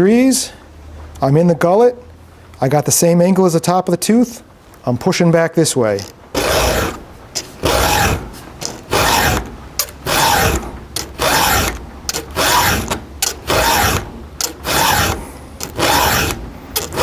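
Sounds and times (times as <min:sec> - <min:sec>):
file rasping on chainsaw chain: 0:06.0 - 0:17.0.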